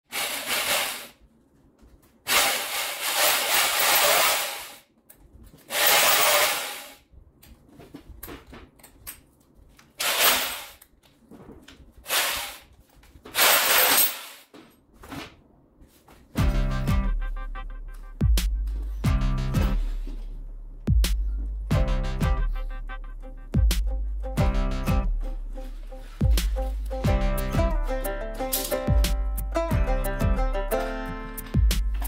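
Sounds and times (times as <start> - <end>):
harsh hissing rasping tool noise: 0.1 - 1.2, 2.3 - 4.8, 5.7 - 7.0, 12.0 - 12.7
music: 16.3 - 32.0.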